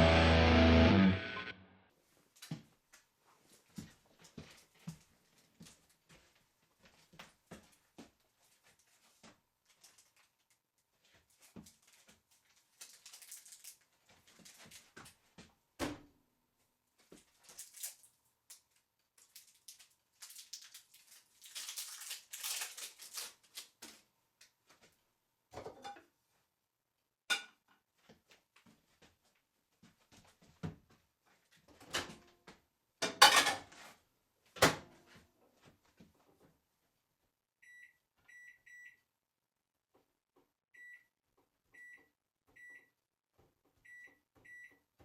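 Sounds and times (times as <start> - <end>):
dishes clinking and knocking: 33.0 - 33.7.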